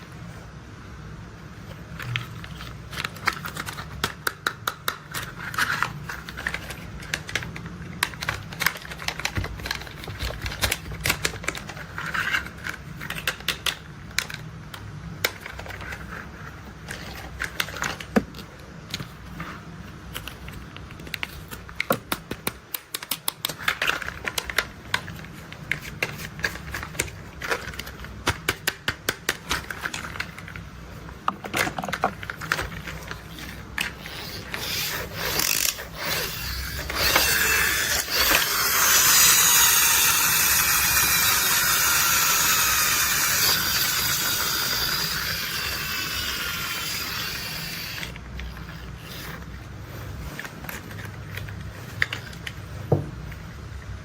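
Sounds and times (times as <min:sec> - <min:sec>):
low steady hum: 0:00.0 - 0:39.8
toy vehicles clicking and rattling: 0:02.0 - 0:18.2, 0:20.1 - 0:30.6, 0:31.4 - 0:52.7.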